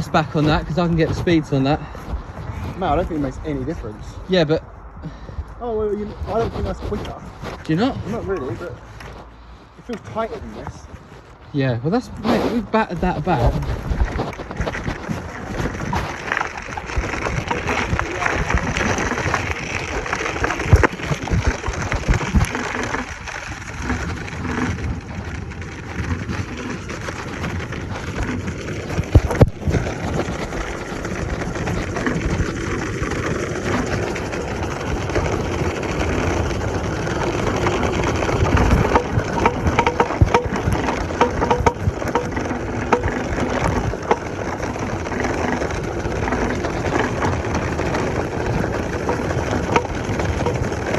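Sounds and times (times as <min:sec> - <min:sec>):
tyres over rough ground: 0:00.0 - 0:50.9
rattles and knocks from bumps: 0:12.8 - 0:50.9.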